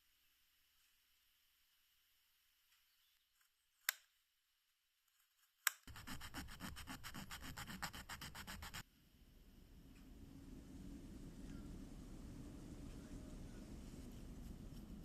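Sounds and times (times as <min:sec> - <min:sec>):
sandpaper rubbing: 0:05.8 - 0:08.8.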